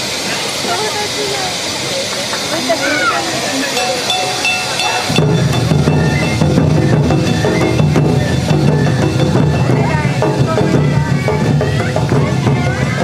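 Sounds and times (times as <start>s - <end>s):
bamboo flute melody: 3.8s - 10.2s
metal gong clanging: 3.8s - 10.4s
drums beating brisk rhythm: 3.8s - 13.0s.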